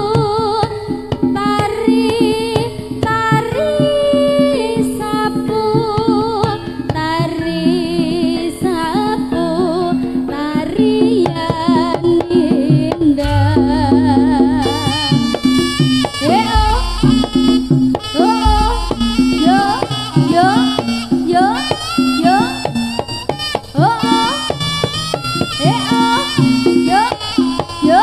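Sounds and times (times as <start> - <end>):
deep low tone: 13.2 - 15.6, 16.5 - 19.8
held mid-pitched tone: 13.2 - 20.4
ornamented melody line: 13.2 - 23.2
kendang drum strokes: 13.2 - 28.0.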